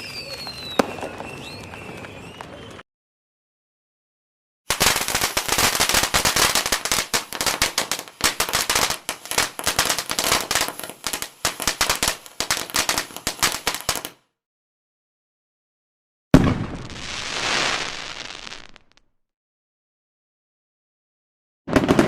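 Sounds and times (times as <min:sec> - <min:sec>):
firecrackers popping: 0:00.0 - 0:02.8, 0:04.7 - 0:14.2, 0:16.4 - 0:19.1, 0:21.7 - 0:22.0.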